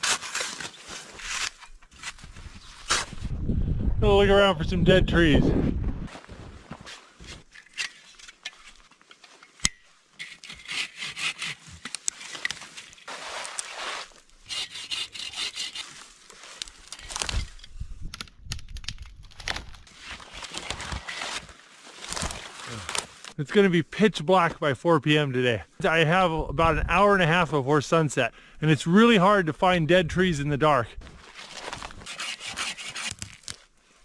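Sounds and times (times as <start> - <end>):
dead wood and brush scraping: 10.2 - 17.8, 19.8 - 23.4, 31.0 - 34.0
wood snapping: 16.6 - 19.8.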